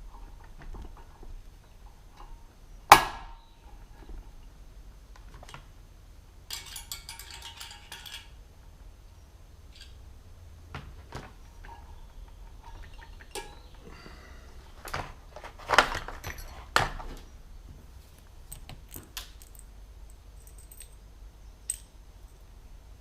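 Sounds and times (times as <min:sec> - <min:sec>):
metal parts and tools clinking: 0:06.5 - 0:08.4, 0:09.7 - 0:10.0, 0:14.8 - 0:17.2, 0:18.5 - 0:22.5.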